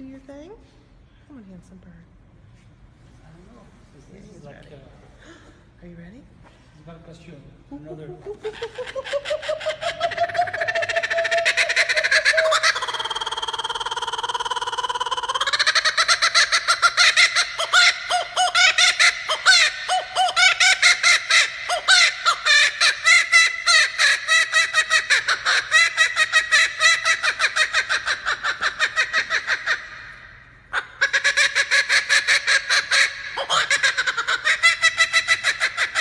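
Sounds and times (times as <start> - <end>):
kookaburra laughing call: 7.8 - 36.0.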